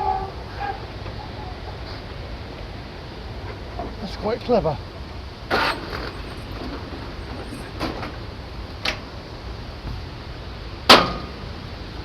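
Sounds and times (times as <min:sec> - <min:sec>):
lift mechanism clicks: 0:05.5 - 0:09.1.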